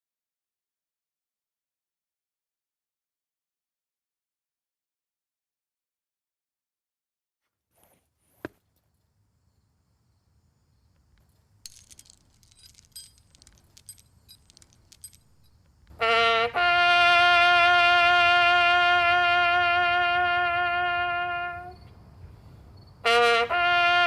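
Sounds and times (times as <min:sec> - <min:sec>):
brass instrument playing: 0:15.9 - 0:21.8, 0:23.0 - 0:24.0.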